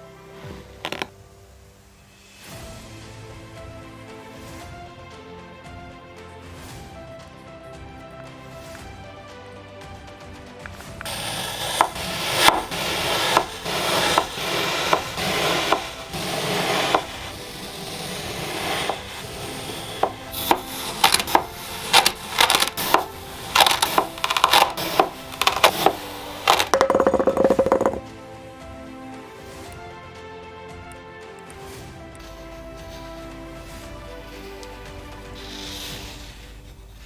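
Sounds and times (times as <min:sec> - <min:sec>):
knife slicing through sand: 0:11.1 - 0:26.5.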